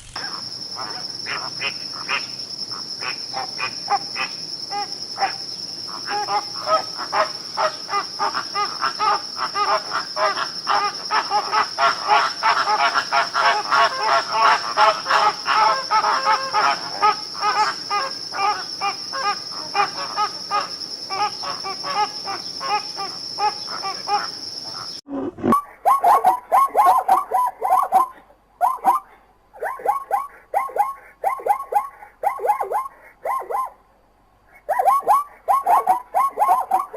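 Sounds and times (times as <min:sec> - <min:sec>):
high insect drone: 0:00.0 - 0:25.0
rapid bright animal calls: 0:02.8 - 0:25.0.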